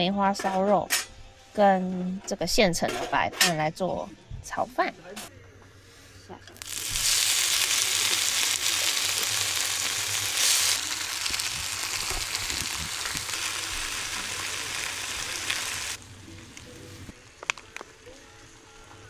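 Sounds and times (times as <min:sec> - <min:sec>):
meat sizzling in a hot pan: 0:06.6 - 0:18.4.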